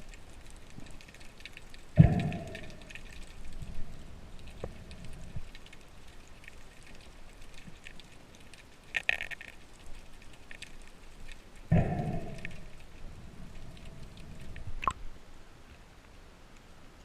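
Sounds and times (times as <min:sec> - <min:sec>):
underwater clicks and crackle: 0:00.0 - 0:15.1
low underwater rumble: 0:02.0 - 0:05.7, 0:11.7 - 0:15.0.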